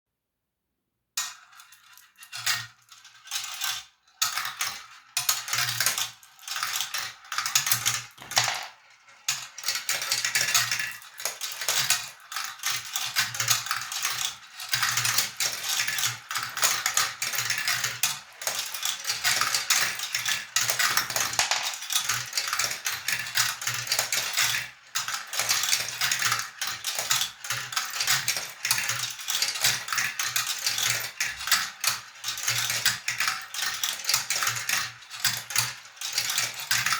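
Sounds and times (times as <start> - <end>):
glass marbles clattering on track: 8.2 - 8.8, 20.6 - 22.1.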